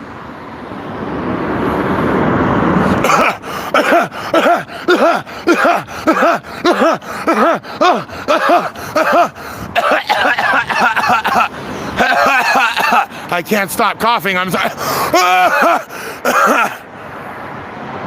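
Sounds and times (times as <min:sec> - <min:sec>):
rush of noise: 0:00.0 - 0:18.0
man coughing: 0:02.9 - 0:13.3, 0:14.5 - 0:16.8.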